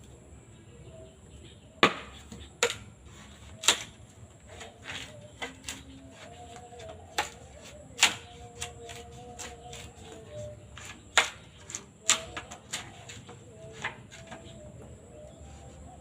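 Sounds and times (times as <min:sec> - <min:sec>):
blade striking bamboo: 0:01.8 - 0:04.0, 0:07.1 - 0:09.9, 0:10.8 - 0:14.4.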